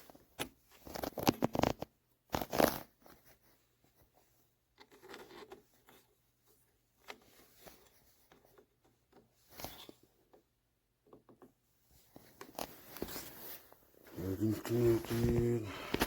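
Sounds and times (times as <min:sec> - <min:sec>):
rustling scrapes of handling: 0:11.9 - 0:16.0.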